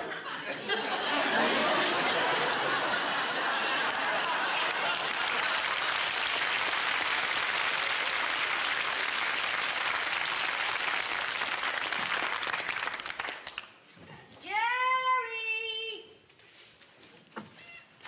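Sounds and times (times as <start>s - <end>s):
audience applauding: 1.3s - 13.8s.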